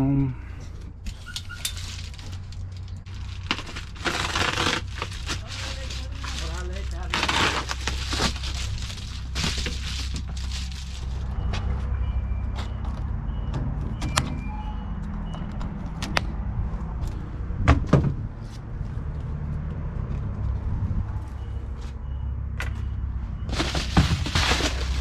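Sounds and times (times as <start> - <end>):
steady low rumble: 15.0 - 22.3.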